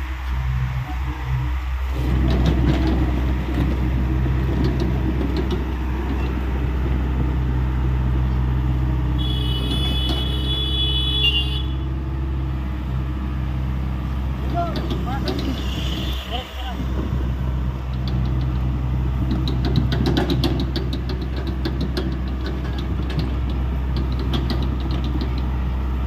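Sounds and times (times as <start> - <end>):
excavator diesel engine running: 0.0 - 26.0.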